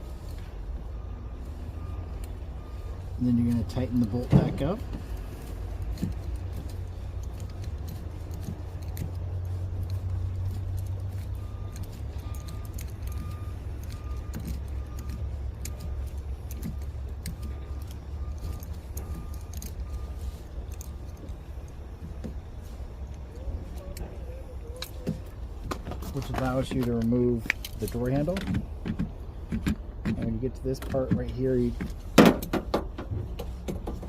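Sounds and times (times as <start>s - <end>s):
steady low rumble: 0.0s - 33.7s
faint electronic beeps: 0.5s - 4.8s, 10.4s - 24.8s
metallic clicks and rattles of driver: 24.8s - 34.0s.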